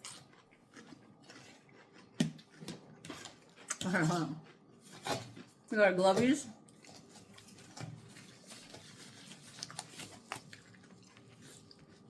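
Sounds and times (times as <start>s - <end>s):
plastic gloves crinkling: 6.0s - 12.0s.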